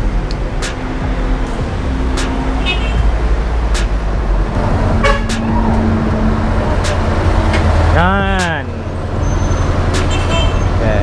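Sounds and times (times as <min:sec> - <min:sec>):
road traffic rumbling: 0:00.0 - 0:11.0
vehicle horn toot: 0:02.4 - 0:03.1, 0:04.6 - 0:08.5, 0:09.2 - 0:11.0.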